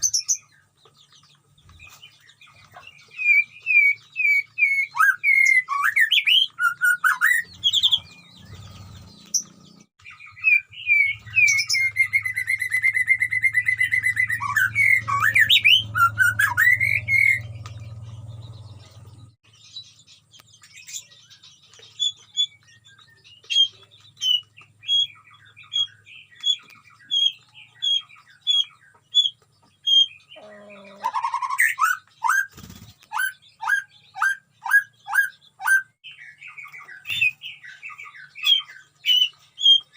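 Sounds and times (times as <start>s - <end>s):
bird singing whistled phrases: 3.1s - 8.2s, 10.2s - 17.5s.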